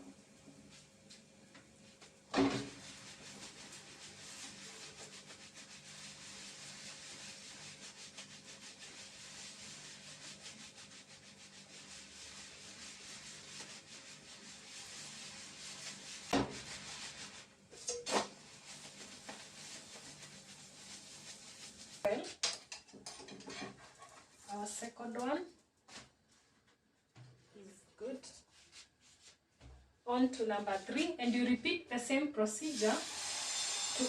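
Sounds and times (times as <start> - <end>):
batter sizzling in a frying pan: 2.3 - 22.1.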